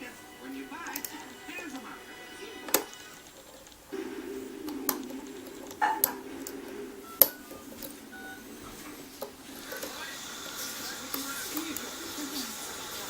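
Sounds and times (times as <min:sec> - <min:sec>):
low steady hum: 0:02.6 - 0:11.3.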